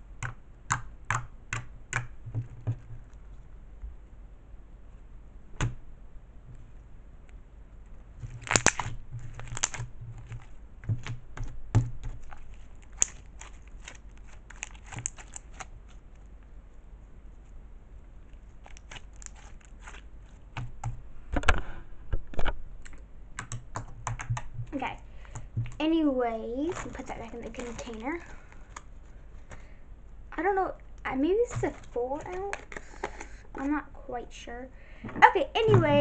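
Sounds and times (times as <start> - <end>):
slime squishing and popping: 8.3 - 16.0, 18.6 - 21.0.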